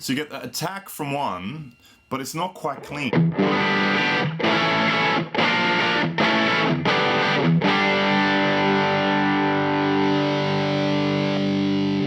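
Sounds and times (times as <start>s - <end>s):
distorted electric guitar chords: 2.8s - 12.0s.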